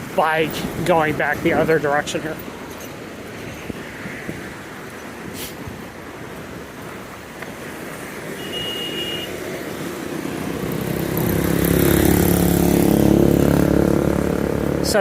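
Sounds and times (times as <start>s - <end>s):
street noise: 0.0s - 15.0s
vehicle engine approaching: 9.4s - 15.0s.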